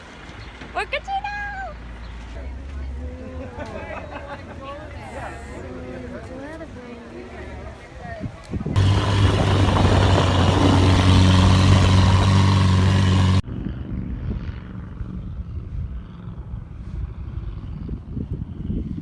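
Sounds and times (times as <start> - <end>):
wind noise: 8.0 - 19.0
loud engine drone: 8.8 - 17.0
uneven rumble: 8.8 - 19.0.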